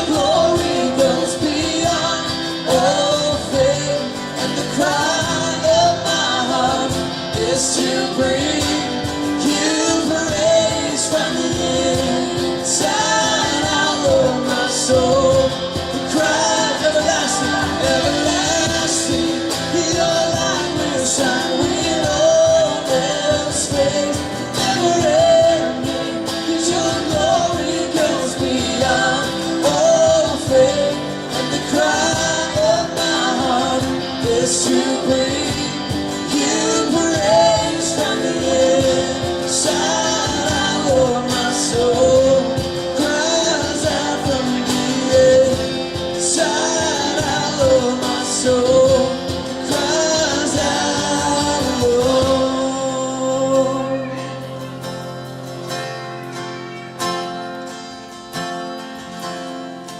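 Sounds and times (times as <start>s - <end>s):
person singing: 0.0s - 54.7s
drums: 0.0s - 59.9s
worship band music: 0.0s - 59.9s.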